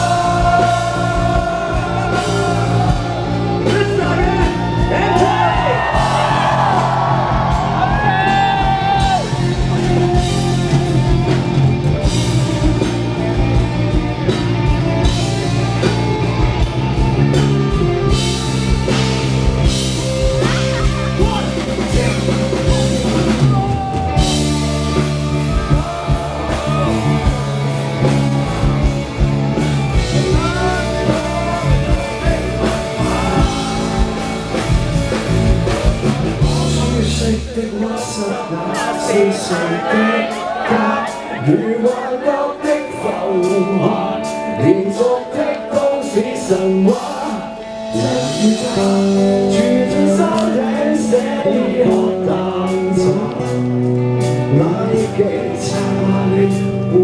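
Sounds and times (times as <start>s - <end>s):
person singing or shouting: 0.0s - 10.1s, 20.2s - 29.0s, 30.1s - 45.4s
drum kit: 0.0s - 45.2s, 45.8s - 57.0s
electric guitar: 0.0s - 57.0s.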